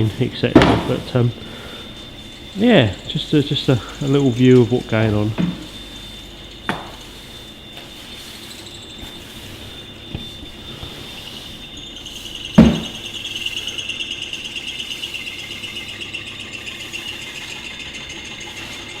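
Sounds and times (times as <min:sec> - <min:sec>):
machinery high whine: 0:00.0 - 0:19.0
loud thump: 0:00.6 - 0:01.1.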